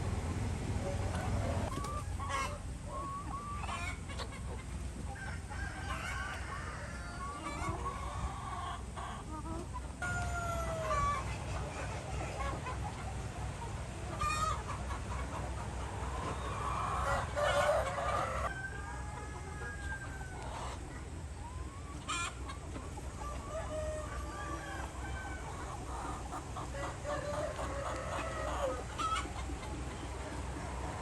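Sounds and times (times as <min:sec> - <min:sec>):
chickens clucking: 0:00.0 - 0:31.0
rooster crowing: 0:16.8 - 0:20.6.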